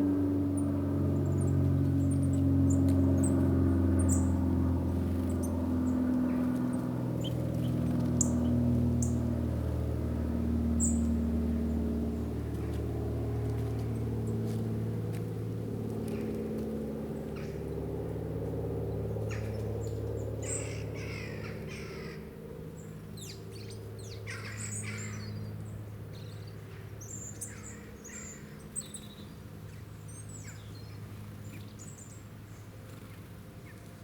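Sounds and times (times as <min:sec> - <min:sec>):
low steady hum: 0:00.0 - 0:34.0
birds chirping and calling: 0:05.1 - 0:09.3, 0:17.2 - 0:17.7, 0:19.2 - 0:33.9.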